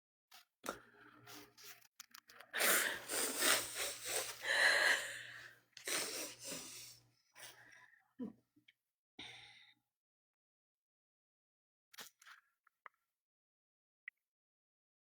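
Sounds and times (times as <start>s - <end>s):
sniffles: 2.6s - 5.2s, 5.8s - 7.6s
woman sobbing: 2.6s - 6.9s.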